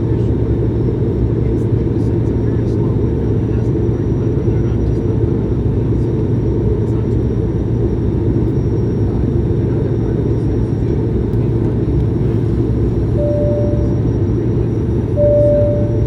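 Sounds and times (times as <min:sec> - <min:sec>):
aircraft cabin engine drone: 0:00.0 - 0:16.0
faint steady whine: 0:12.2 - 0:16.0.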